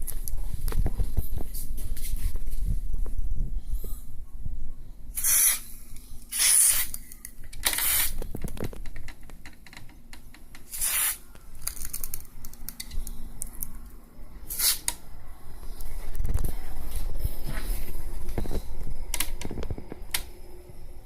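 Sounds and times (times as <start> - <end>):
faint low hum: 0.0 - 21.0
aerosol spray hissing: 10.7 - 11.2.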